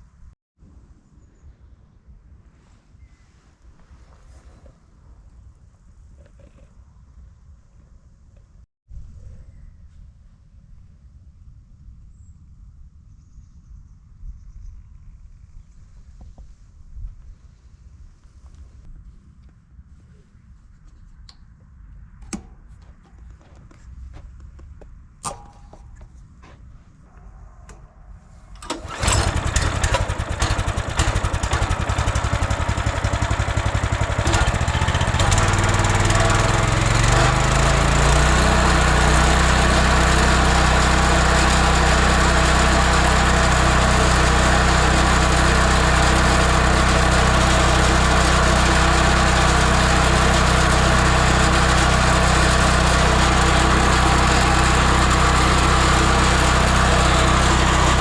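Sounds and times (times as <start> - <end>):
stump grinder engine: 28.6 - 58.0.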